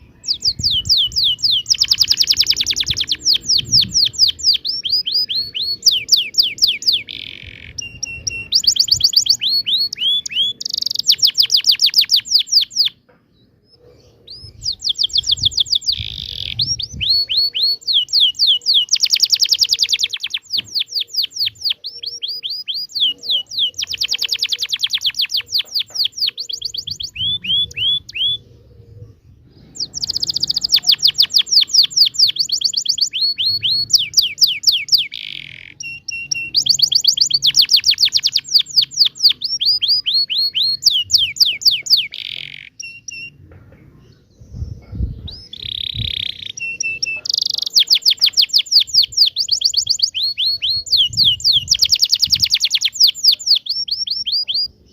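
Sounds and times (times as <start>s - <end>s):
canary singing trills: 0.0s - 54.9s.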